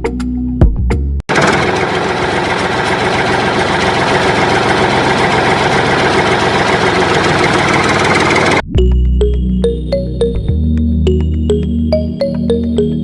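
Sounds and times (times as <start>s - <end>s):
motor running with rattle: 1.3s - 8.6s.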